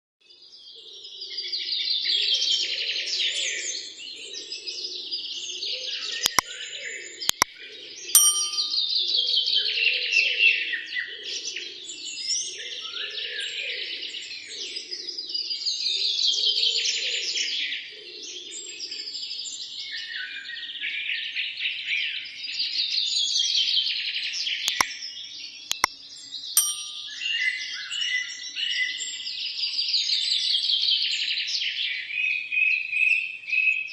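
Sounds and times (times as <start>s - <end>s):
ringing ding-like clicks: 8.2s - 8.9s, 25.7s - 25.9s, 26.6s - 27.4s.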